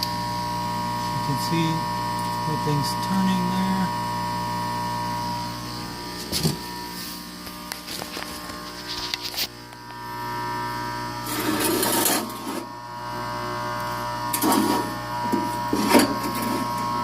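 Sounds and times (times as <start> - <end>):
electric motor hum: 0.0 - 17.0.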